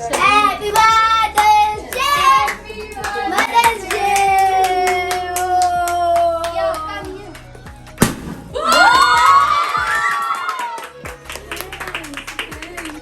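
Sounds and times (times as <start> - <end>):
rhythmic clapping beat: 0.0 - 13.0
person singing: 10.9 - 13.0.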